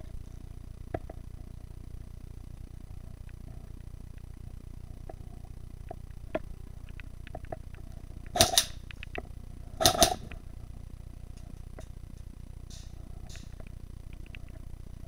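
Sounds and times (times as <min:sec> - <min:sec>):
faint clicks and ticks: 0:00.0 - 0:02.2, 0:02.9 - 0:15.0
airsoft gun shots: 0:08.4 - 0:08.8, 0:09.8 - 0:10.3, 0:12.7 - 0:13.5.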